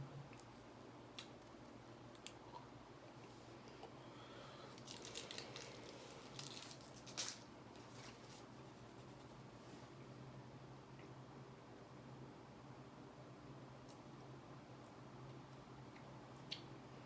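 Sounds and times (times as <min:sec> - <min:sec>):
crinkling handling noises: 0:04.6 - 0:08.8.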